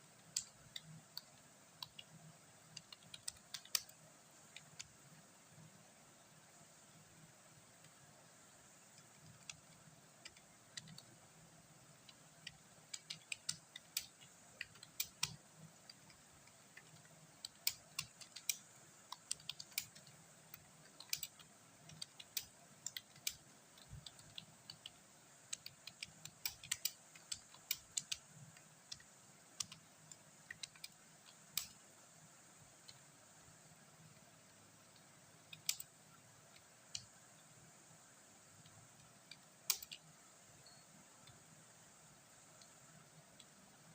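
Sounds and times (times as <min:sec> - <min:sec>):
computer keyboard typing: 0:00.2 - 0:05.0, 0:08.9 - 0:11.2, 0:11.9 - 0:31.8, 0:34.9 - 0:37.2, 0:38.6 - 0:40.1.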